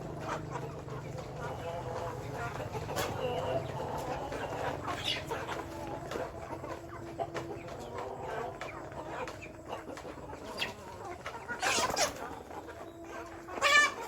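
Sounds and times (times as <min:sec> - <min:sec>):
chickens clucking: 0:00.0 - 0:14.0
chicken squawk: 0:11.5 - 0:12.4, 0:13.2 - 0:14.0.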